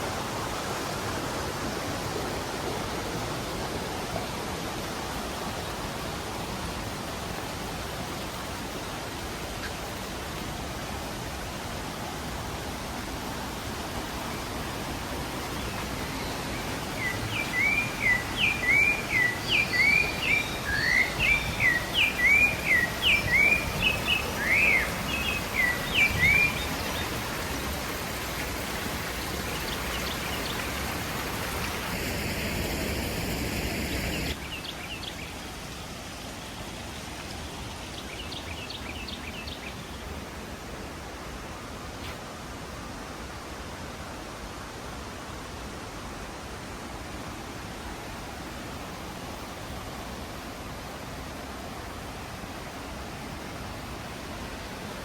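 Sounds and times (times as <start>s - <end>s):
waterfall rushing: 0.0s - 55.0s
bird chirping: 15.6s - 27.2s.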